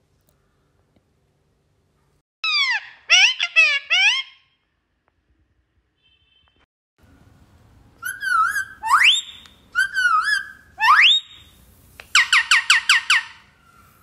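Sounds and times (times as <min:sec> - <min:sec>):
parrot whistling: 0:08.0 - 0:11.5.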